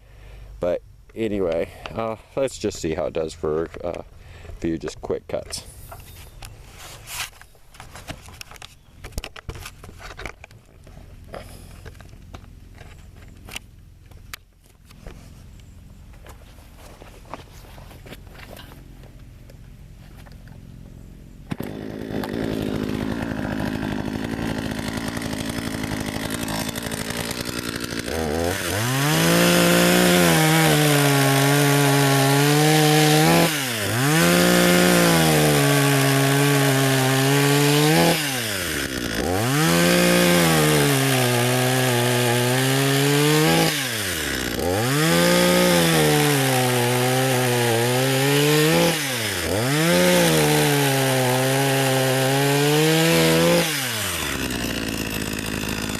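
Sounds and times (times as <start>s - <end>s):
chainsaw revving while cutting wood: 21.5s - 55.9s.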